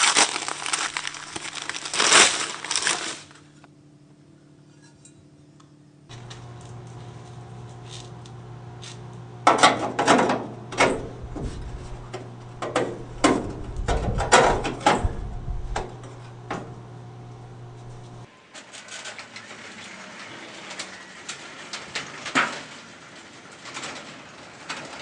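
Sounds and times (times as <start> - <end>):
low steady hum: 6.0 - 18.3
sharp clicks and knocks: 6.1 - 18.3.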